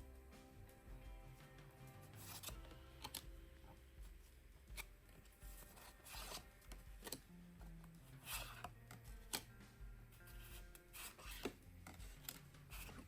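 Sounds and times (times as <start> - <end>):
card box packaging rustling: 2.2 - 3.3.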